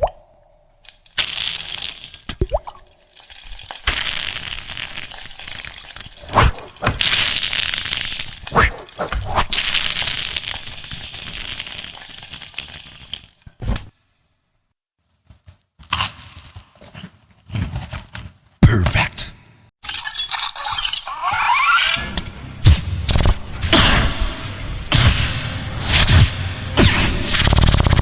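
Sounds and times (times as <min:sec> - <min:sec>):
beatboxing hiss and cracks: 0:25.9 - 0:28.0.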